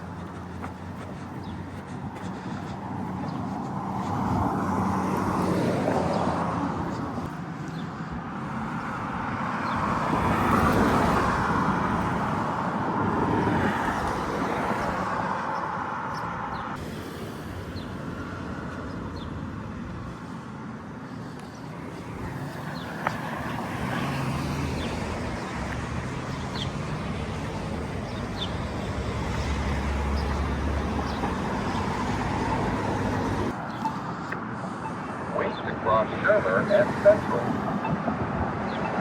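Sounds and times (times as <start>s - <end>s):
road traffic rumble: 0.0s - 39.0s
large vehicle passing: 21.8s - 39.0s.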